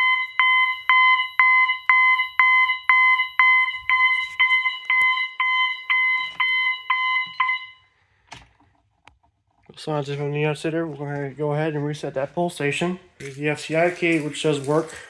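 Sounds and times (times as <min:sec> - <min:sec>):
pulsing fire alarm tone: 0:00.0 - 0:07.9.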